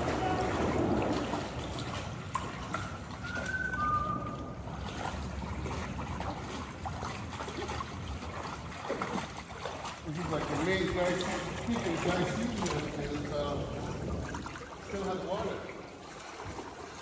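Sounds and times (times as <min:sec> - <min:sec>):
river water trickling: 0:00.0 - 0:17.0.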